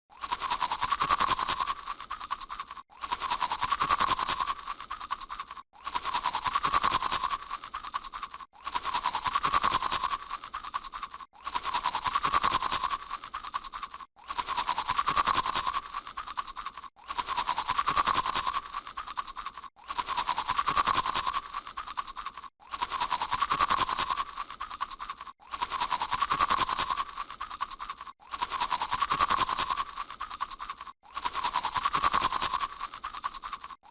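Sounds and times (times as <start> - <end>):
toothbrush scrubbing teeth: 0.1 - 33.9.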